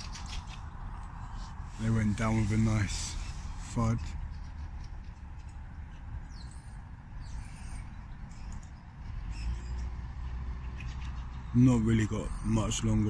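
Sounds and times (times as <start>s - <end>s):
steady low rumble: 0.0s - 9.4s
small bird chirping: 2.6s - 12.9s.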